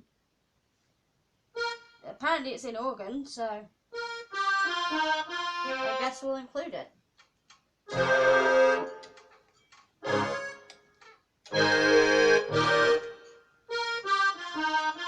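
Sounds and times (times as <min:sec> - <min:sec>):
electronic keyboard accordion chords: 0:01.6 - 0:02.0, 0:04.0 - 0:06.3, 0:07.9 - 0:09.3, 0:10.0 - 0:10.9, 0:11.5 - 0:15.0.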